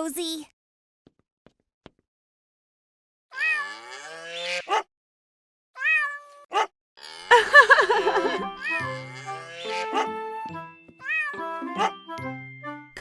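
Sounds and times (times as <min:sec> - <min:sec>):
light music: 0:07.4 - 0:13.0.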